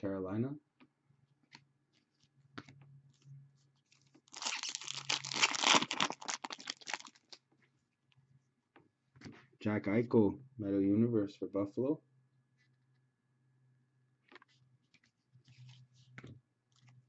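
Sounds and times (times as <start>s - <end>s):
foil wrapper tearing and crinkling: 4.2s - 7.4s.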